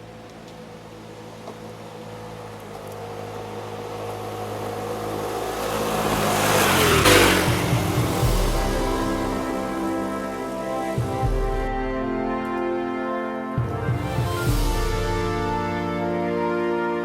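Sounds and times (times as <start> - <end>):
vehicle engine passing by: 0.0 - 11.3.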